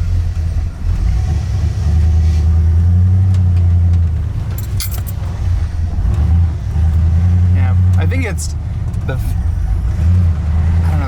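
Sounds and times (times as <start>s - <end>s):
truck engine idling unevenly: 0.0s - 11.0s
metallic jingle: 4.6s - 5.2s.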